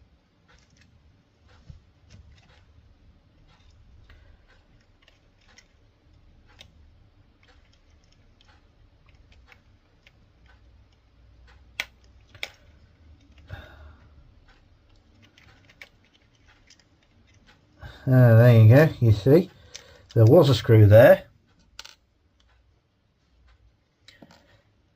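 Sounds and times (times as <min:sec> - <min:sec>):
small model parts clicking: 0:00.4 - 0:02.7, 0:03.4 - 0:13.5, 0:14.4 - 0:17.8.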